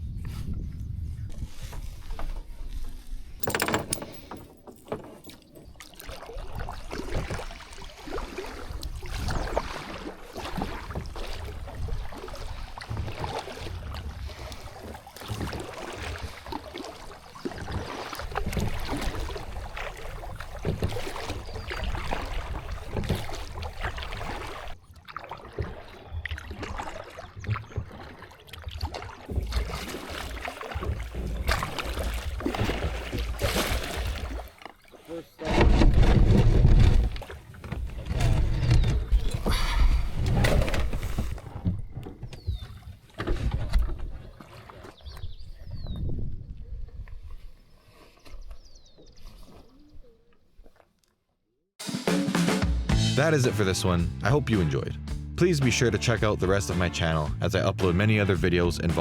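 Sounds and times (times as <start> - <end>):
wind buffeting microphone: 0.0 - 3.4, 45.1 - 47.6
paddle strokes: 1.3 - 45.6
water splashing: 4.8 - 45.7, 53.3 - 59.0.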